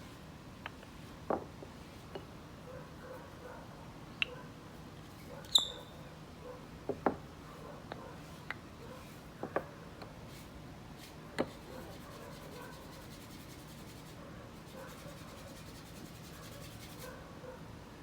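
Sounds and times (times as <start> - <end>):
wooden parts and tools knocking: 6.9 - 7.2.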